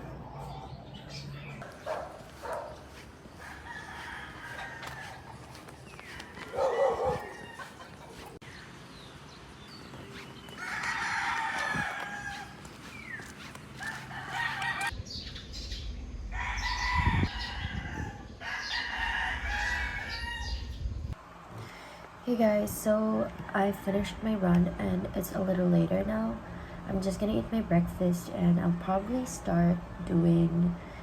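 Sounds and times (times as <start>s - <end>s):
roosters crowing: 1.6s - 8.6s, 10.4s - 15.0s, 16.2s - 20.8s.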